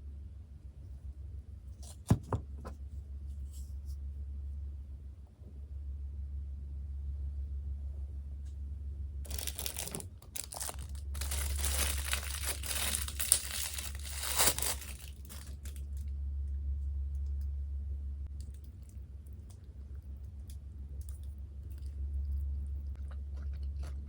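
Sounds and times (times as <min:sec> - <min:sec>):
low electrical hum: 0:00.0 - 0:24.0
food packaging crinkling and tearing: 0:09.2 - 0:16.1.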